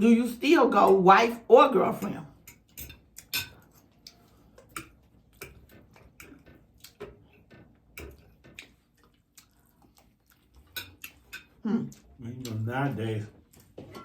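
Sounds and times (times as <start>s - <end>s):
chewing clicks and smacks: 3.1s - 7.4s, 8.0s - 12.6s.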